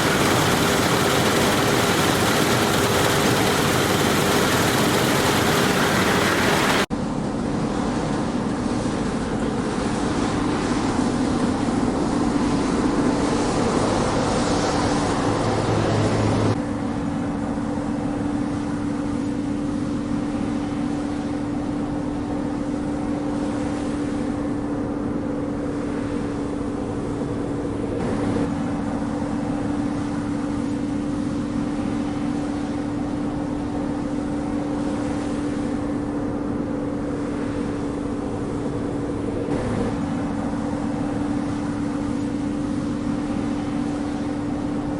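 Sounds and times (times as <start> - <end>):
combine harvester running: 0.0 - 6.9.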